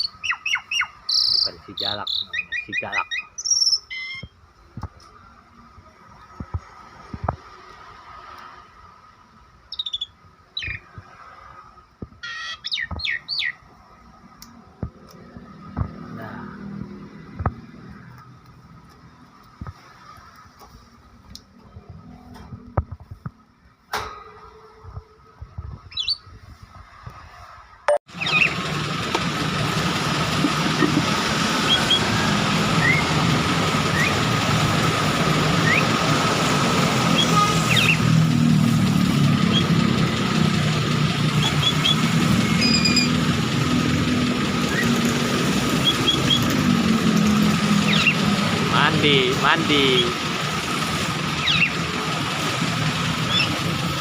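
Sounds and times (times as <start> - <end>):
starling chirping and whistling: 0.0 - 4.3, 9.7 - 10.9, 12.3 - 13.6, 25.9 - 26.3, 28.2 - 28.6, 31.6 - 32.2, 32.8 - 33.2, 33.9 - 34.3, 35.6 - 36.0, 37.1 - 38.1, 39.4 - 39.8, 41.4 - 43.2, 45.8 - 46.6, 47.8 - 48.3, 51.3 - 51.8, 53.2 - 53.6
engine-like hum and hiss: 4.4 - 12.1, 13.3 - 54.0.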